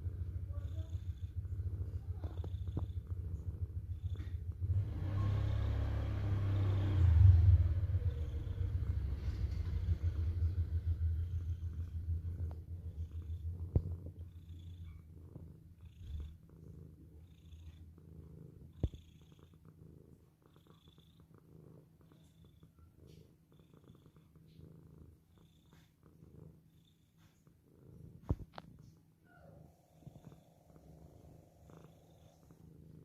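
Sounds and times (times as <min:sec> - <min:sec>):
cat purring: 0:00.0 - 0:33.0.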